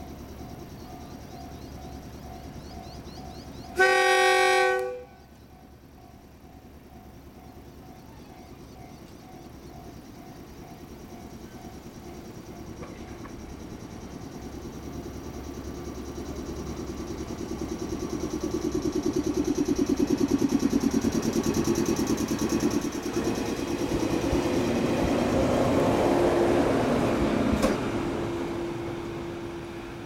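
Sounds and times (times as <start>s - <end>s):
electric train running by: 0.0s - 30.0s
rapid pulsing tone: 13.4s - 26.0s.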